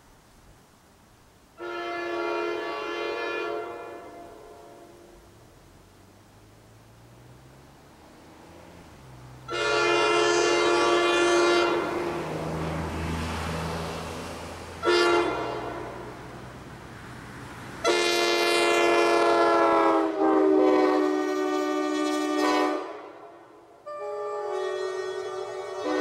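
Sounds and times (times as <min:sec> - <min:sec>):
locomotive air horn chord: 0:01.6 - 0:05.3, 0:09.5 - 0:12.3, 0:14.8 - 0:16.3, 0:17.8 - 0:26.0.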